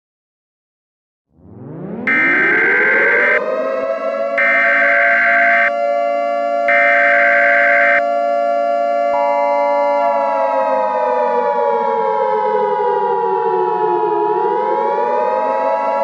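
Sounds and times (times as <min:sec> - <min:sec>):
warning siren wailing: 0:01.4 - 0:16.0
shrill high tone: 0:02.1 - 0:03.4, 0:04.4 - 0:05.7, 0:06.7 - 0:08.0.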